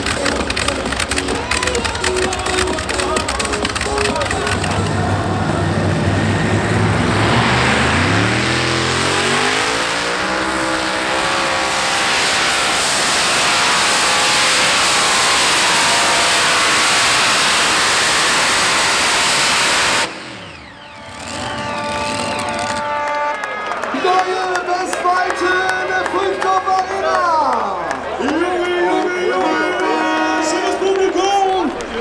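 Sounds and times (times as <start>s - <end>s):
pulling tractor engine at full throttle: 0.0s - 23.3s.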